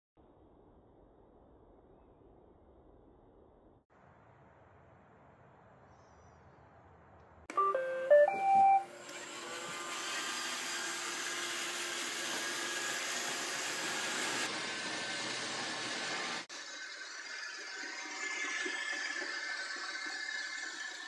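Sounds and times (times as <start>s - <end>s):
robot vacuum beep tune: 7.5s - 9.0s
vacuum motor whirring: 8.3s - 16.5s.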